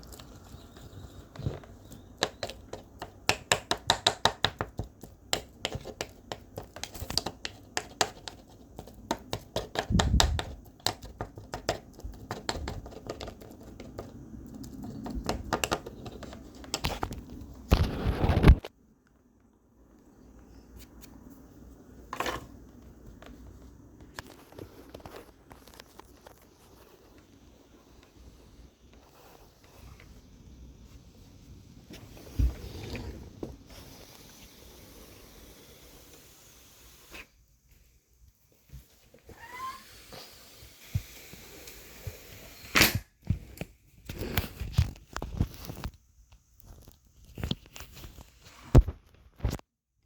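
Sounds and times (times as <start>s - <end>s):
crinkling: 0.0s - 3.3s, 20.7s - 34.2s
scratching and tapping clicks: 0.0s - 18.6s.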